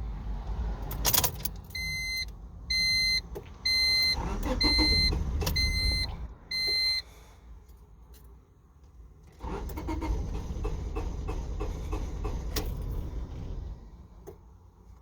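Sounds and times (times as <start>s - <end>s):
car warning chime beeping: 1.7s - 7.1s.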